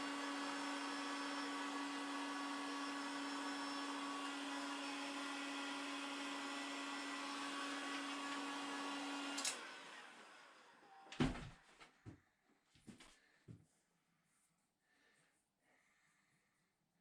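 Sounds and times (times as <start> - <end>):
heat gun fan whine: 0.0 - 11.4.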